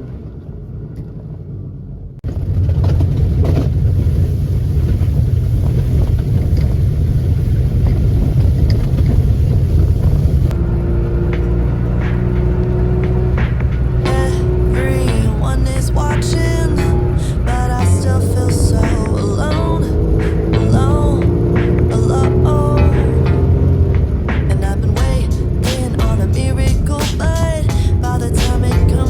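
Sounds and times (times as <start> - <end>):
two-stroke engine rumbling: 10.5 - 29.0.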